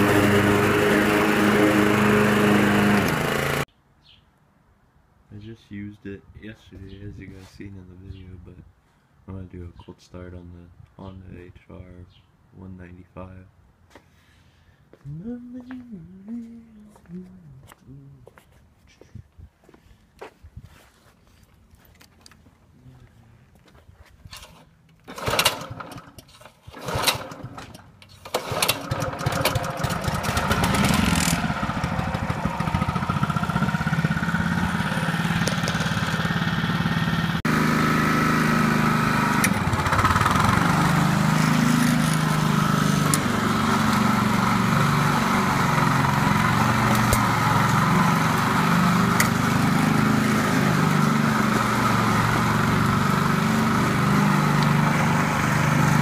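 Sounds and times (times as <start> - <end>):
lawn mower engine running: 0.0 - 3.7, 25.0 - 56.0
pull cord starting: 24.4 - 32.0, 38.7 - 56.0.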